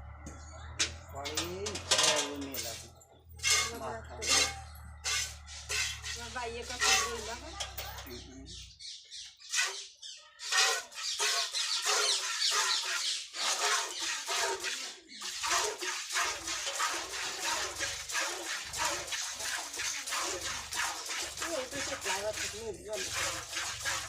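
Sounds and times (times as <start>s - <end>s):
milk squirting into a pail: 2.3s - 7.5s, 10.4s - 24.0s.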